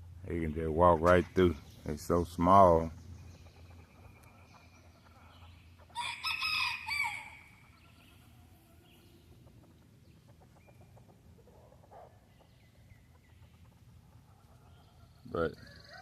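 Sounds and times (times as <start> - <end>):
rooster crowing: 6.0 - 7.6, 15.6 - 16.0.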